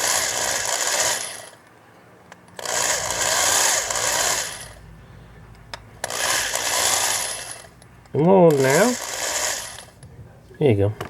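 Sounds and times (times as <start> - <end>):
electric drill grinding metal: 0.0 - 1.6, 2.6 - 4.8, 6.0 - 7.7, 8.4 - 10.0.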